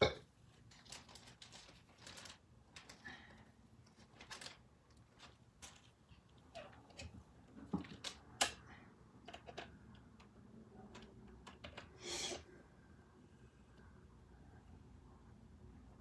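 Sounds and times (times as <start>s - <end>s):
small plastic parts and tools clicking: 3.9s - 12.0s.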